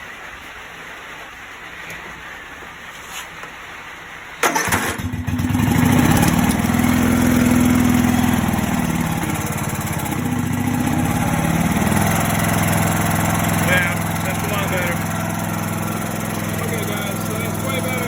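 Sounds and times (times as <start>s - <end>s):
lawn mower engine cranking and running: 4.4s - 18.0s.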